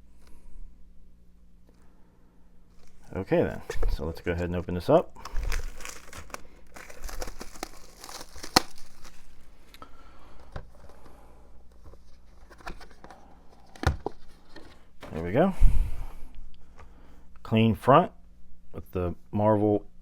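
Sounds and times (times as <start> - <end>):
plastic wrap crinkling and tearing: 5.2 - 9.8.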